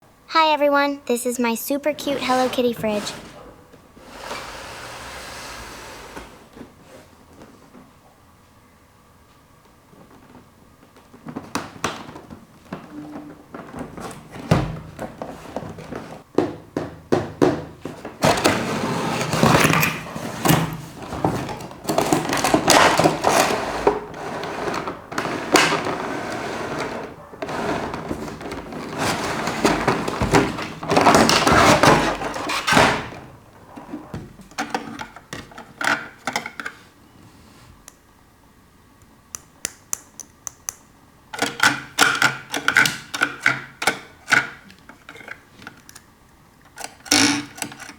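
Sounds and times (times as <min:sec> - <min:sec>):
packaging crinkling and rustling: 0:27.7 - 0:33.2.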